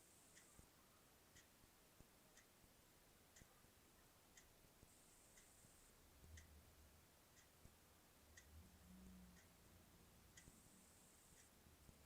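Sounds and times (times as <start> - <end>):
faint ticking: 0.0 - 12.0.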